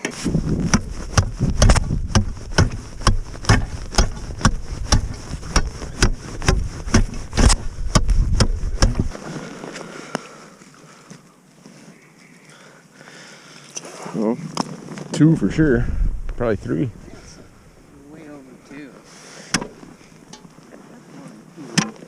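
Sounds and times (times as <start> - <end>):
ice chisel striking ice: 0.7 - 9.1.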